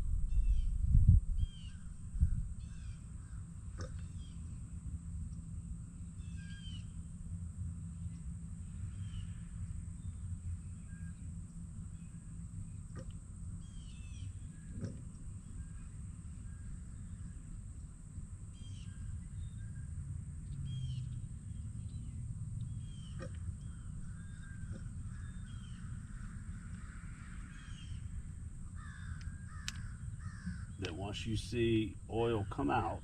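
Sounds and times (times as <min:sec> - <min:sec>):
steady low rumble: 0:00.0 - 0:33.0
crows cawing: 0:24.0 - 0:31.0
faint handling clicks: 0:29.2 - 0:29.9.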